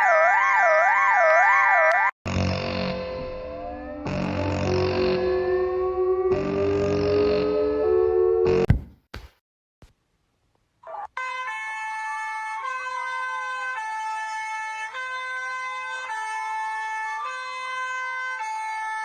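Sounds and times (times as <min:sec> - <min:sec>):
two-tone hi-lo siren: 0:00.0 - 0:08.7
wailing siren tone: 0:00.0 - 0:08.7.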